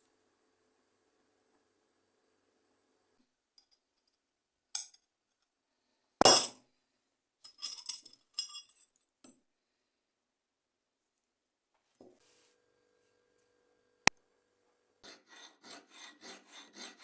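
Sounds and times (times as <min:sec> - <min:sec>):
hard objects clinking: 0:07.5 - 0:08.8.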